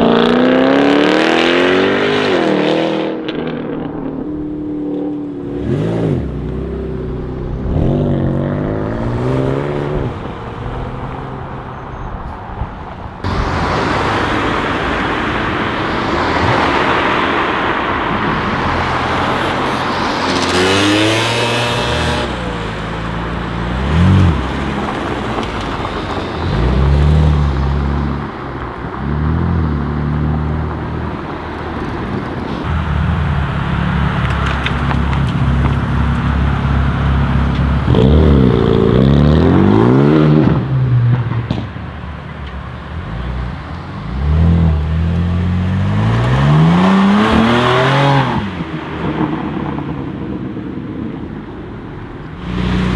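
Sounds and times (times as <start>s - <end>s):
car engine revving: 0.0s - 11.8s, 13.2s - 52.9s
steady rushing noise: 12.6s - 39.9s.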